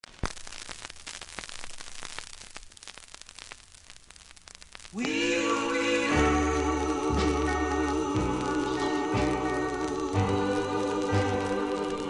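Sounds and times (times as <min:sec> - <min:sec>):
vinyl record hiss and crackle: 0:00.0 - 0:12.0
organ-like chord: 0:06.0 - 0:12.0.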